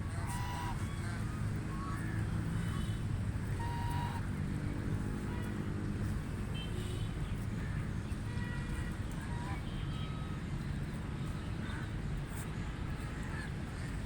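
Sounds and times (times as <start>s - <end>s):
geese honking: 0.0s - 4.2s.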